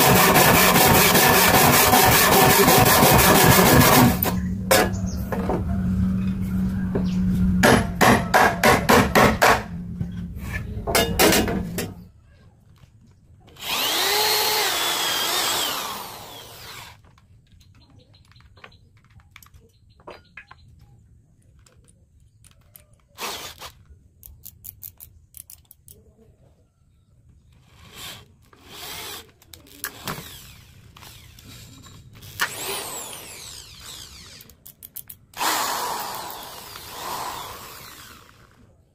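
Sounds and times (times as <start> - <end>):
power tool whining: 0.0 - 6.7, 13.5 - 17.0, 27.8 - 34.6, 35.4 - 38.7
low hum: 3.8 - 8.4, 9.1 - 11.0
sharp knocks: 7.6 - 9.7.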